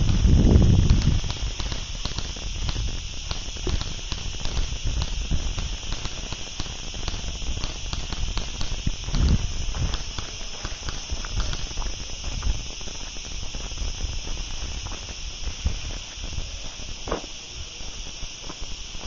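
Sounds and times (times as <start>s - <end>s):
small clicks: 0.0s - 12.0s
wind buffeting microphone: 0.0s - 17.0s
crackling rustling noise: 0.0s - 19.0s
steady hiss: 0.0s - 19.0s.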